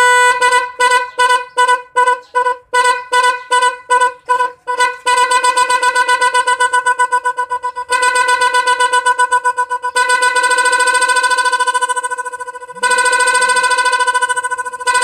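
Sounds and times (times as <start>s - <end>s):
electric horn beeping: 0.0s - 15.0s.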